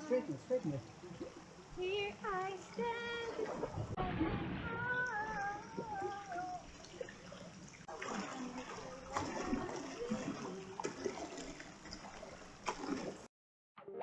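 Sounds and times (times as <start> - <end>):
small water splashes: 0.0 - 13.3.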